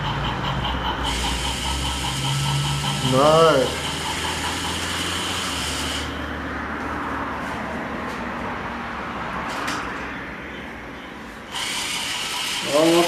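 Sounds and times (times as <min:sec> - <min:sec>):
toy train motor whine: 0:00.0 - 0:06.2, 0:11.5 - 0:13.0.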